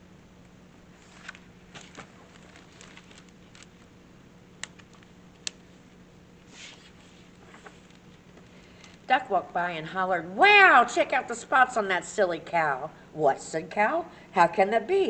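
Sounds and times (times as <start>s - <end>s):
low room hum: 0.0s - 15.0s
book rustling and clicking: 1.0s - 3.9s, 4.6s - 5.7s.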